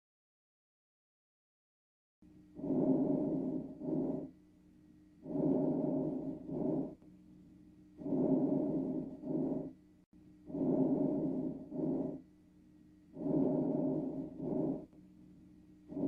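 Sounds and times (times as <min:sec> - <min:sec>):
chest breath sounds: 0:02.6 - 0:04.3, 0:05.2 - 0:07.0, 0:08.0 - 0:09.8, 0:10.5 - 0:12.2, 0:13.1 - 0:15.0.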